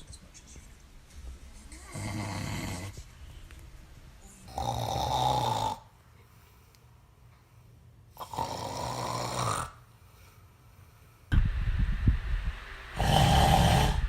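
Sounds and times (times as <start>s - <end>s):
quiet breaths: 0.3s - 4.6s, 5.8s - 8.3s, 9.7s - 11.4s
man snoring: 1.9s - 3.0s, 4.5s - 5.9s, 8.2s - 9.8s, 13.0s - 14.0s.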